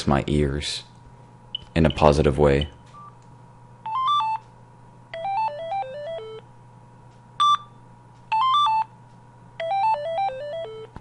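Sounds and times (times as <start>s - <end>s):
phone ringtone beeping melody: 5.2s - 6.4s, 8.3s - 8.9s, 9.6s - 10.9s.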